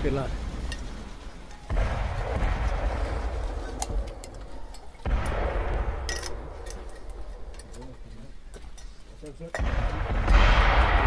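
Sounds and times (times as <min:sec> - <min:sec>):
artillery shell explosions: 0:00.0 - 0:07.5, 0:09.6 - 0:11.0
sharp cracks: 0:00.6 - 0:07.9.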